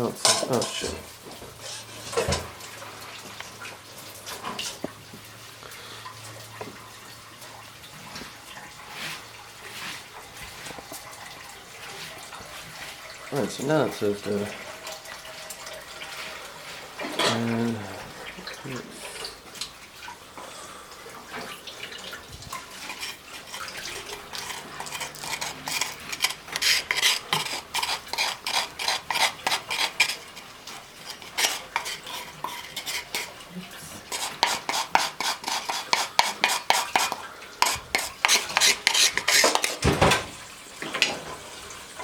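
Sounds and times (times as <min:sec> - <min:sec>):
utensil stirring and scraping dish: 0:00.0 - 0:02.7, 0:08.8 - 0:17.8, 0:21.4 - 0:42.0.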